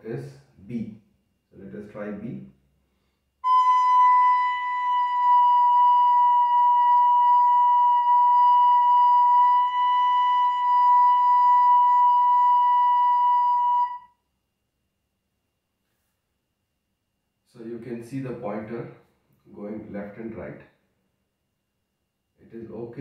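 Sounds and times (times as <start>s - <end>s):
recorder playing long note: 3.4s - 14.1s.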